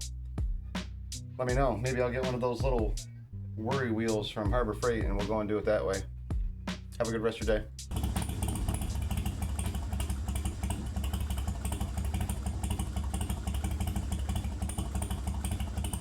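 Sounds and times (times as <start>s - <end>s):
motorcycle engine idling: 7.2s - 16.0s.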